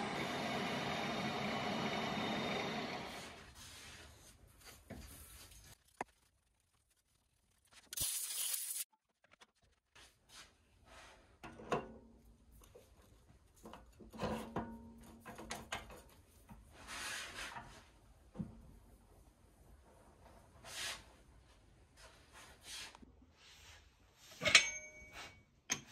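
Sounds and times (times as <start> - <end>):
tools and parts knocking: 24.4 - 25.9.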